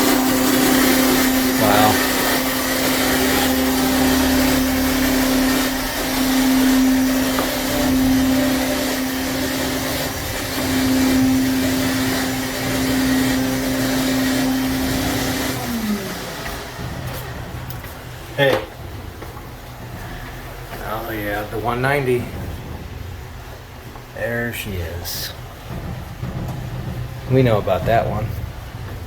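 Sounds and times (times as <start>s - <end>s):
electric motor humming: 0.0s - 17.5s.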